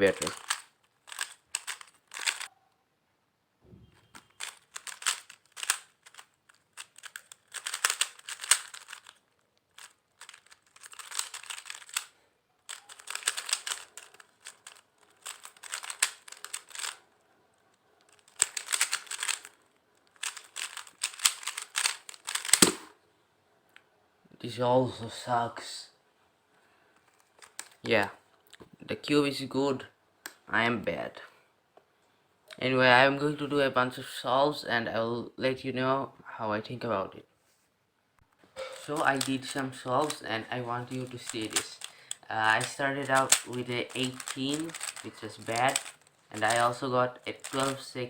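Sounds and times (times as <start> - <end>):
speed cube plastic clicking: 0.0 - 2.5, 4.2 - 17.0, 18.0 - 22.9, 27.4 - 27.8, 38.8 - 47.9.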